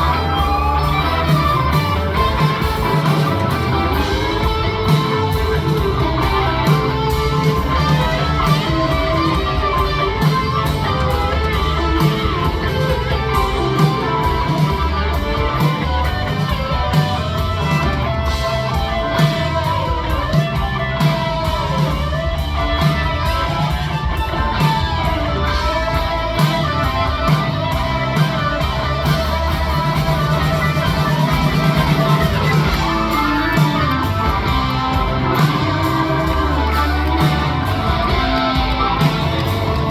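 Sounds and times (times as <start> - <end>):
bending lead guitar line: 0.0 - 39.9
live rock band playing: 0.0 - 39.9.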